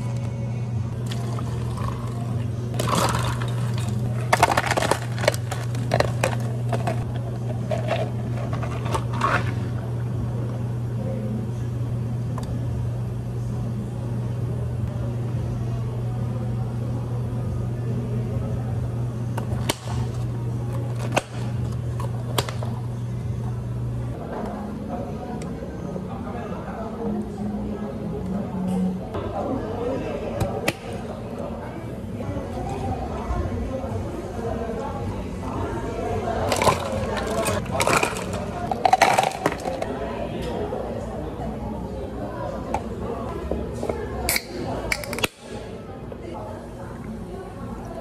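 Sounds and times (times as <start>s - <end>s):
low machine hum: 0.0s - 48.0s
liquid pouring: 1.0s - 4.0s
cups and utensils clinking: 1.0s - 9.7s, 36.4s - 39.9s.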